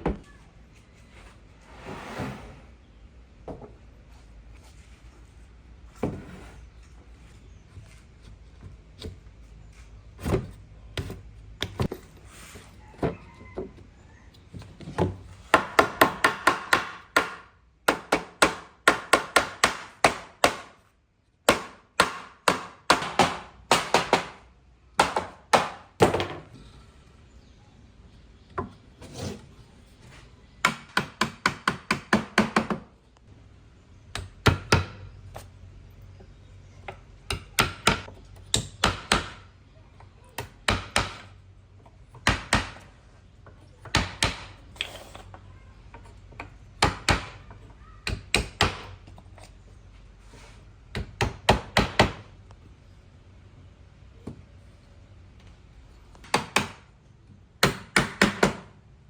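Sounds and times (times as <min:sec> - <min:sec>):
hammering on wood: 0:15.5 - 0:20.9, 0:21.5 - 0:26.4, 0:30.6 - 0:32.9, 0:34.1 - 0:35.0, 0:37.3 - 0:39.5, 0:40.4 - 0:41.3, 0:42.2 - 0:42.9, 0:43.8 - 0:44.6, 0:46.8 - 0:49.0, 0:50.9 - 0:52.3, 0:56.2 - 0:56.9, 0:57.6 - 0:58.7.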